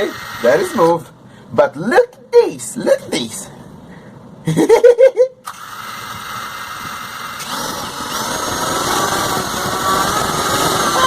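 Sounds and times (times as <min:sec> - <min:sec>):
drone motors whirring: 0:00.0 - 0:01.0, 0:05.5 - 0:11.0.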